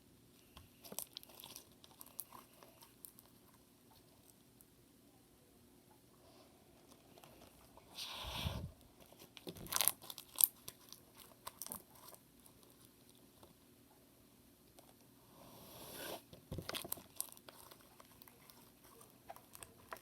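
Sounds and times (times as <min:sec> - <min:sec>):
slime crackling and popping: 0:09.4 - 0:12.1
slime squishing: 0:16.6 - 0:20.0.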